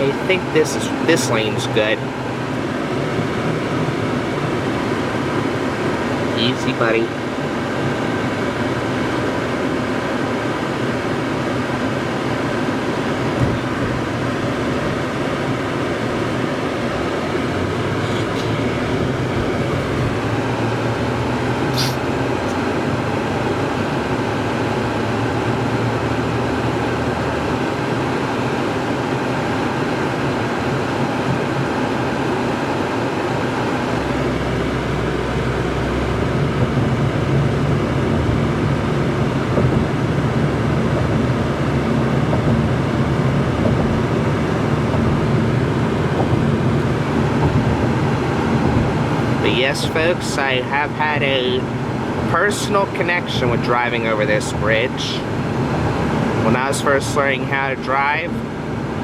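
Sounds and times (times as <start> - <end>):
car driving on highway: 0.0 - 59.0
deep low rumble: 17.6 - 22.6.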